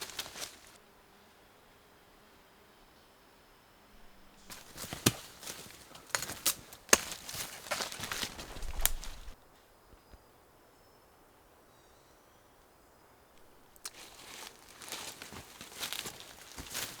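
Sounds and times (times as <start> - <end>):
rustling and handling noises: 0.0 - 0.8, 4.4 - 9.4, 13.4 - 17.0
sharp cracks: 4.5 - 9.4.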